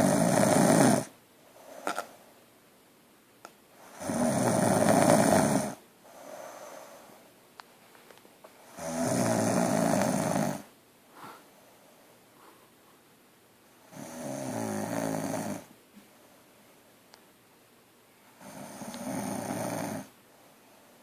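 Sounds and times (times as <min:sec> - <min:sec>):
woman snoring loudly: 0:00.0 - 0:01.1, 0:03.8 - 0:06.6, 0:08.7 - 0:10.7, 0:13.9 - 0:15.7, 0:18.4 - 0:20.1
soft breath: 0:01.4 - 0:02.4, 0:06.0 - 0:07.4, 0:11.1 - 0:13.1.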